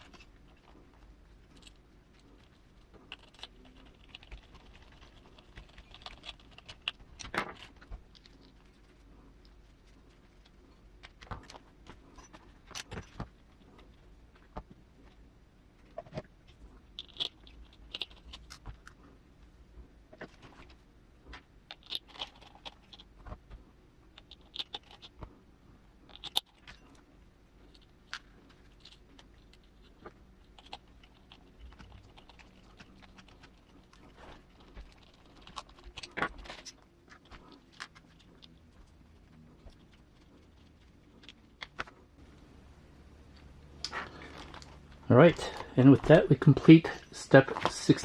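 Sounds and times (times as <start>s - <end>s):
small parts clicking and scraping: 0.0s - 15.2s, 26.0s - 42.3s, 43.3s - 48.0s.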